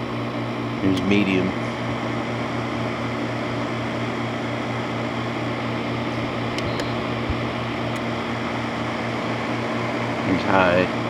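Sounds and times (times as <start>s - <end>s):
air conditioner air rush: 0.0s - 11.0s
low electrical hum: 0.0s - 11.0s.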